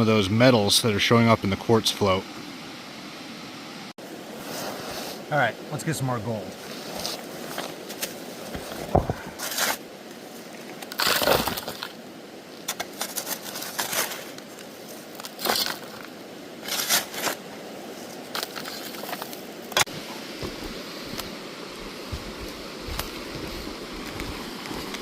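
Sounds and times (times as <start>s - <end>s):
gravel crunching and scraping: 6.4s - 25.0s.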